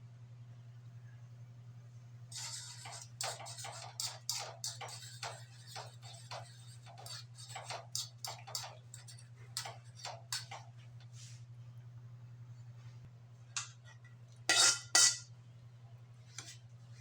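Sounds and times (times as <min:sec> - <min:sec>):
steady low hum: 0:00.0 - 0:17.0
utensils knocking on cookware: 0:02.3 - 0:10.7, 0:14.5 - 0:15.3.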